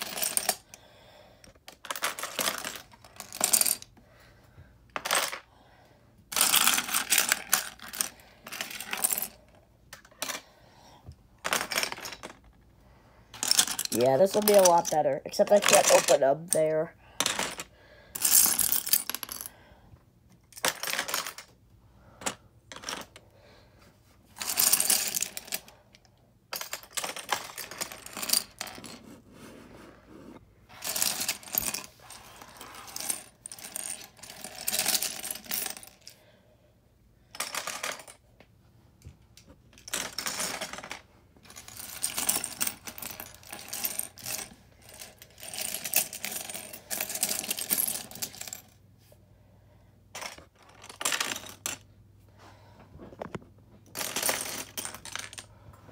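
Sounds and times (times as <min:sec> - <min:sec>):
plastic pieces rattling: 0:01.7 - 0:03.9, 0:06.3 - 0:09.4, 0:11.4 - 0:12.6, 0:13.3 - 0:16.6.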